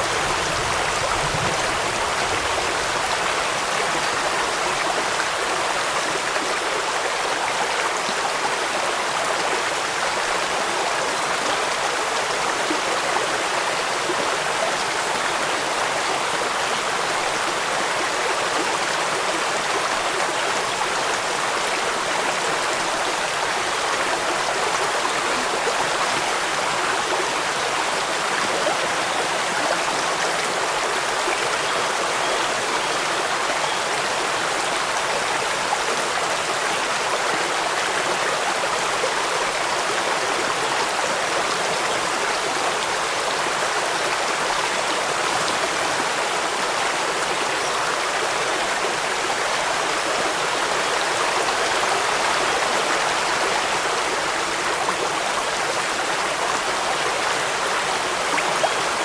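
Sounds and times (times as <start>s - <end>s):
running water rushing: 0.0s - 59.0s.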